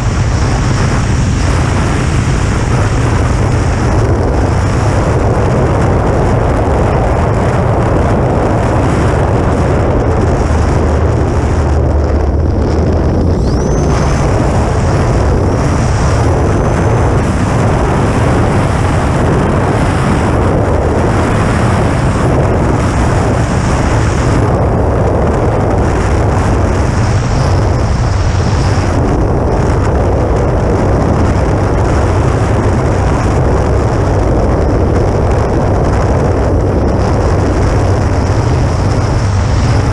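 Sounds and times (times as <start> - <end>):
wind rush and buffeting: 0.0 - 39.9
faint high whine: 8.6 - 19.0.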